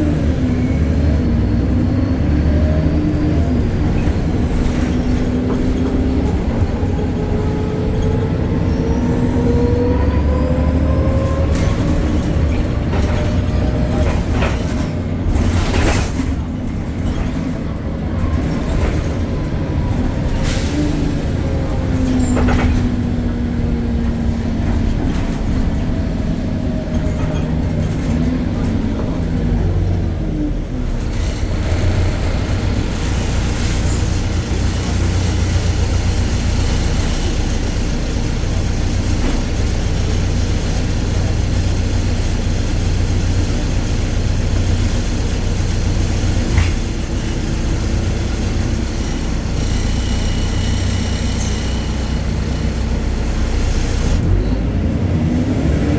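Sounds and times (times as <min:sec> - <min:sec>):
bus diesel engine drone: 0:00.0 - 0:55.9.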